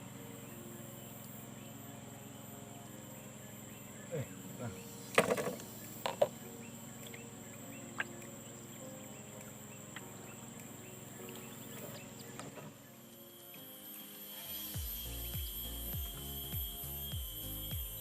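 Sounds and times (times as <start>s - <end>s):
high insect drone: 0.0s - 18.0s
insect chirps: 0.0s - 18.0s.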